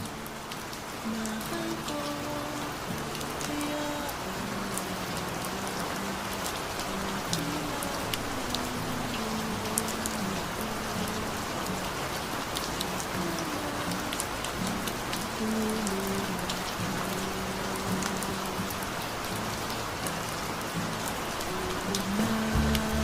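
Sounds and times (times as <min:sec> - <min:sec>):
steady rainfall: 0:00.0 - 0:23.0
soft instrumental music: 0:20.8 - 0:23.0
rhythmic bass line: 0:22.5 - 0:23.0.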